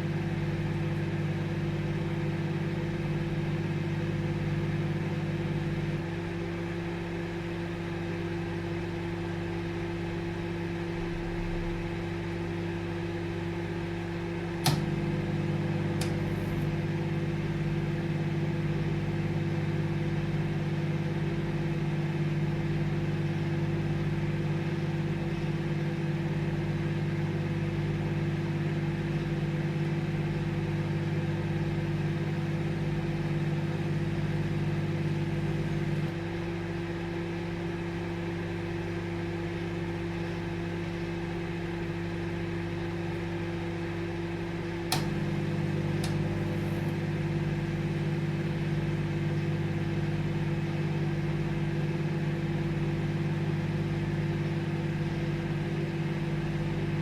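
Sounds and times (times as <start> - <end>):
microwave oven humming: 0.0 - 57.0
microwave clicks: 14.6 - 16.9, 44.7 - 47.1.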